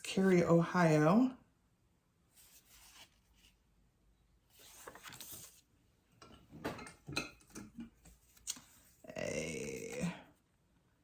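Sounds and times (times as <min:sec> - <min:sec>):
paper cards rustling: 0:02.4 - 0:03.6, 0:04.5 - 0:05.7, 0:08.0 - 0:09.0.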